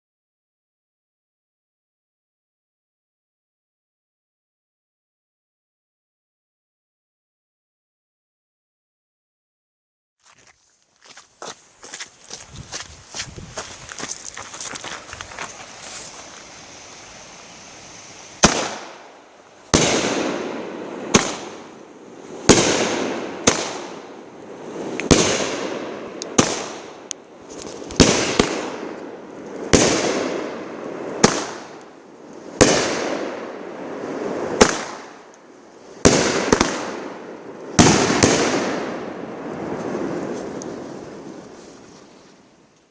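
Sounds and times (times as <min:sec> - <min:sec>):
fireworks bangs: 0:13.4 - 0:41.6.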